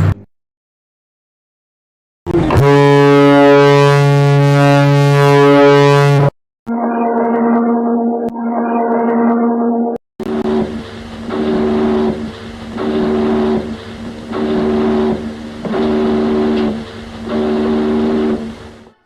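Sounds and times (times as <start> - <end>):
ship's horn short blasts: 2.3 - 6.3, 10.3 - 18.9
held horn note: 2.3 - 9.3, 10.3 - 18.7.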